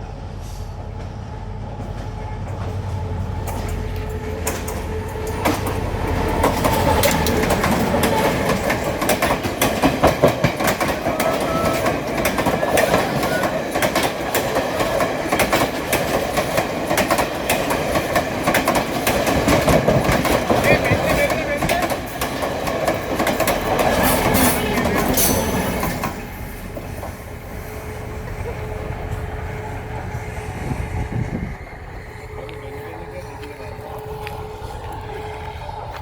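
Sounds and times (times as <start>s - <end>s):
train rumbling: 0.0s - 36.0s
wheels clattering over rail joints: 1.8s - 27.3s.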